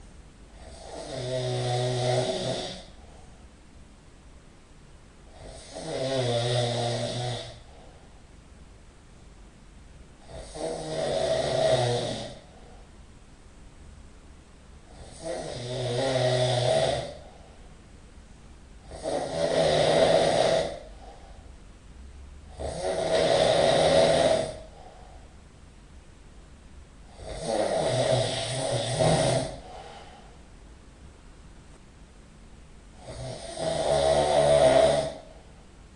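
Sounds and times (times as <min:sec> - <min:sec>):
quiet breathing: 0:00.0 - 0:03.7, 0:05.2 - 0:08.5, 0:10.1 - 0:13.1, 0:14.7 - 0:25.5, 0:27.0 - 0:30.6, 0:32.9 - 0:35.8
person snoring loudly: 0:00.6 - 0:03.1, 0:05.3 - 0:07.8, 0:10.2 - 0:12.6, 0:14.9 - 0:17.4, 0:18.8 - 0:21.2, 0:22.5 - 0:24.9, 0:27.1 - 0:30.2, 0:33.0 - 0:35.5.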